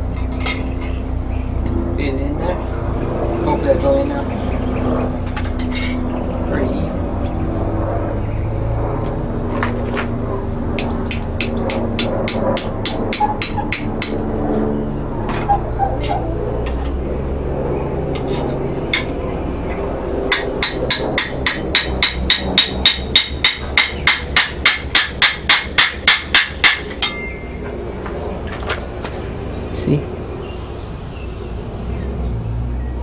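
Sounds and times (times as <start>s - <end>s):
steady low hum: 0.0s - 33.0s
hammer striking steel rivet: 20.3s - 27.4s.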